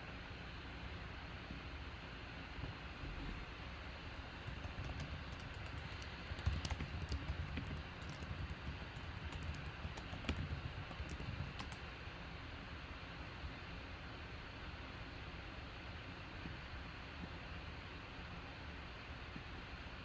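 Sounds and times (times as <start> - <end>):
steady background noise: 0.0 - 18.4
keyboard key clicks: 4.4 - 11.8.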